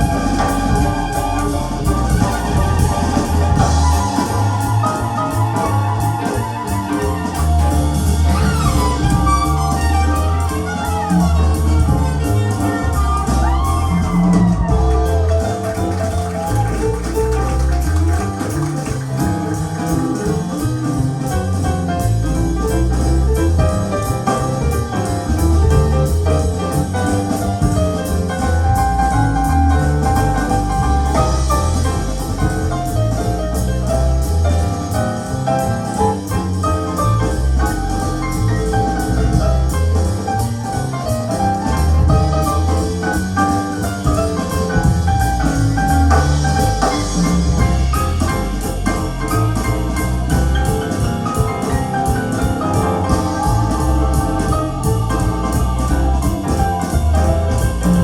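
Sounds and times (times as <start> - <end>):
instrumental jazz with piano and bass: 0.0 - 58.0.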